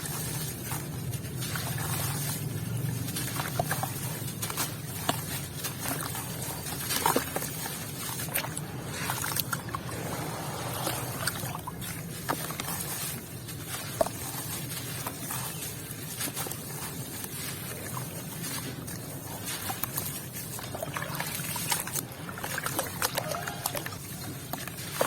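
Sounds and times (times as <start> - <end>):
cement crunching and crumbling: 0.0 - 25.0.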